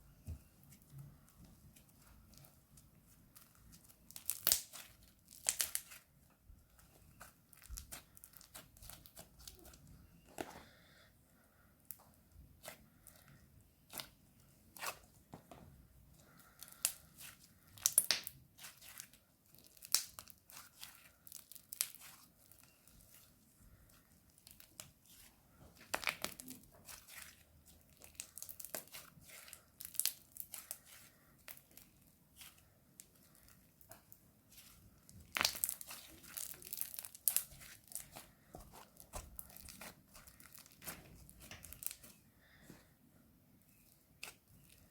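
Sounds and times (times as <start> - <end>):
slime crackling and crunching: 1.7 - 9.9, 16.2 - 42.2.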